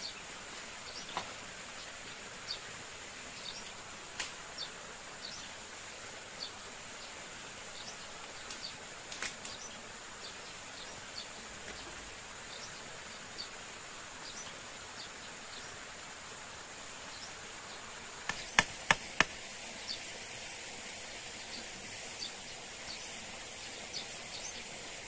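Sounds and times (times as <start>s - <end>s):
even hiss: 0.0s - 25.0s
sharp knocks: 18.3s - 19.4s.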